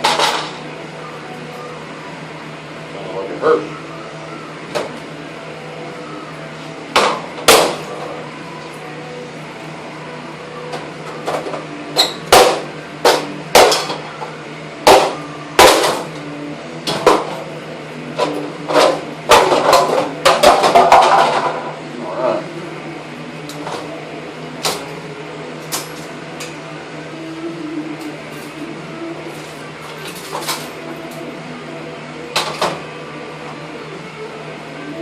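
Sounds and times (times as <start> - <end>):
hammer striking a printer: 6.9 - 7.8, 12.2 - 14.0, 14.8 - 16.1.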